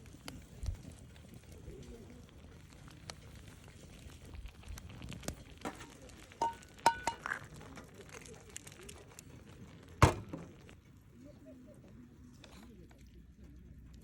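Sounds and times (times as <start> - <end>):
utensil clinking against skillet: 5.7 - 7.5.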